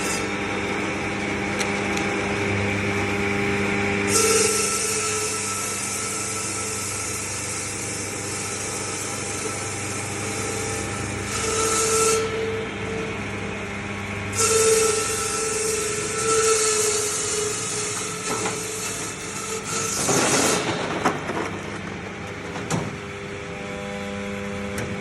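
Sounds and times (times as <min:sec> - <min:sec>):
ice-cutting machine motor hum: 0:00.0 - 0:25.0
saw blades grinding through ice: 0:14.3 - 0:20.7.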